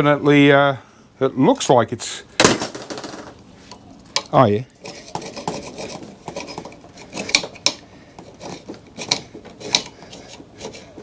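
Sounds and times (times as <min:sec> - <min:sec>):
tool scraping metal bar: 0:04.8 - 0:11.0.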